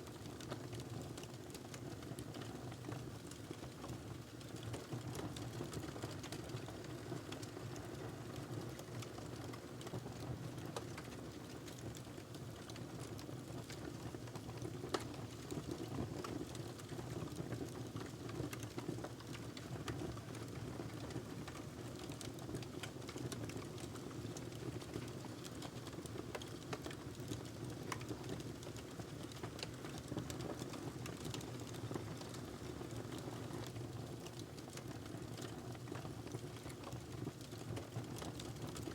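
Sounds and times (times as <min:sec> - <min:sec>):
wood fire crackling: 0:10.8 - 0:38.9.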